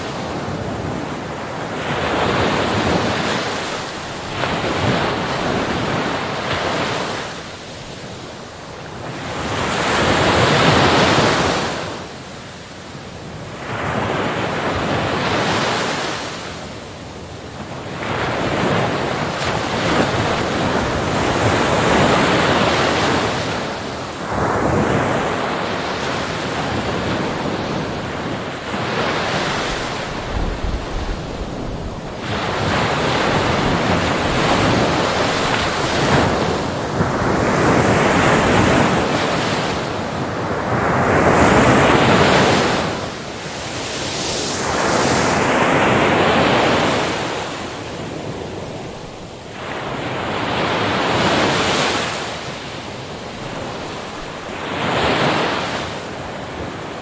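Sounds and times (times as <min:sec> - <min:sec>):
ocean waves breaking: 0:00.0 - 0:16.7, 0:17.6 - 0:57.0.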